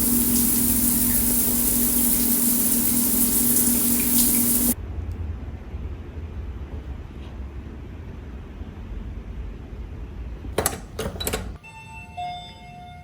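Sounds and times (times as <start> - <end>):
pipe hum: 0.0 - 4.8
tap water running: 0.0 - 4.8.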